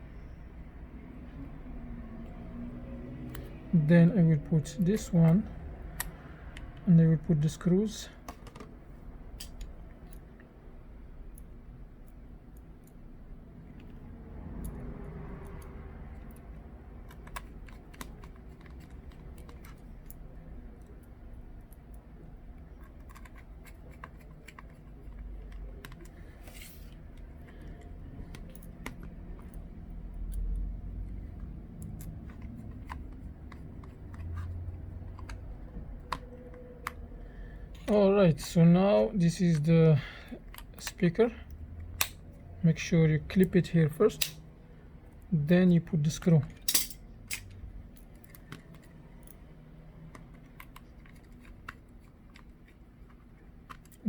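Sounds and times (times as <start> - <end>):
small clicks of screwdriver and parts: 9.4 - 10.5, 13.7 - 20.2, 26.9 - 37.1, 40.3 - 42.4, 46.0 - 54.0.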